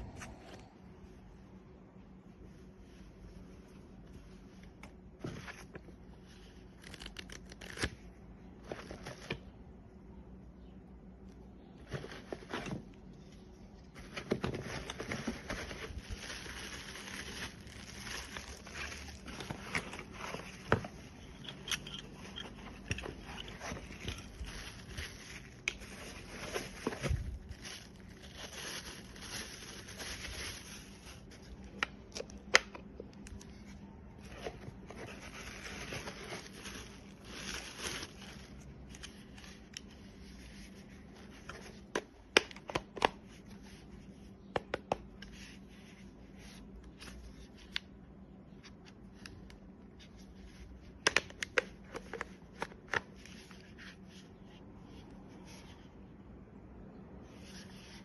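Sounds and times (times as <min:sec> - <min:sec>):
handling rustling: 0:13.9 - 0:32.2, 0:33.2 - 0:42.0.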